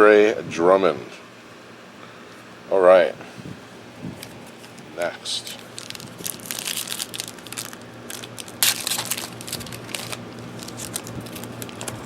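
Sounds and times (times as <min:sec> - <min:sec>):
foil wrapper crinkling: 0:04.2 - 0:12.0
foil wrapper ripping: 0:04.2 - 0:12.0.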